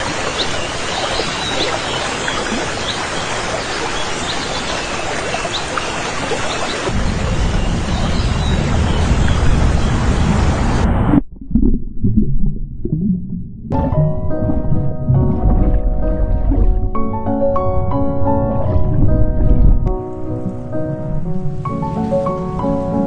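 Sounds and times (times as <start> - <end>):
rushing outdoor noise: 0.0 - 11.1
deep low rumble: 6.9 - 21.5.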